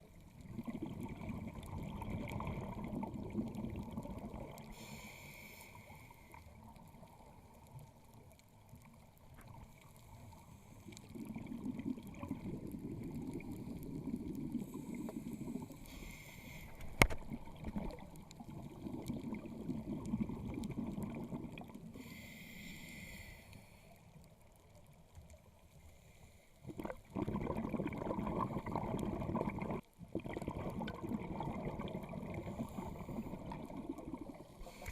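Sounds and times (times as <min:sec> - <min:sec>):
hissing regulator inhalations: 0:04.7 - 0:06.4, 0:14.6 - 0:17.0, 0:22.0 - 0:23.9, 0:34.6 - 0:34.9
bubbly regulator exhalations: 0:26.6 - 0:34.9.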